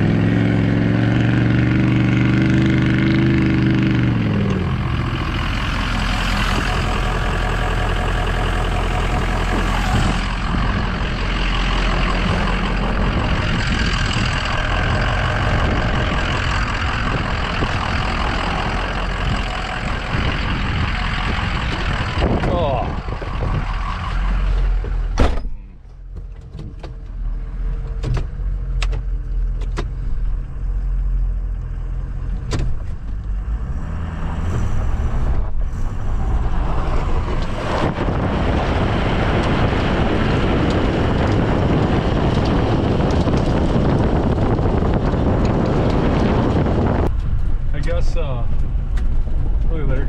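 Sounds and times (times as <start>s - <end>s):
truck engine running: 0.0s - 33.9s, 34.7s - 50.0s
sharp clicks and knocks: 24.8s - 27.2s.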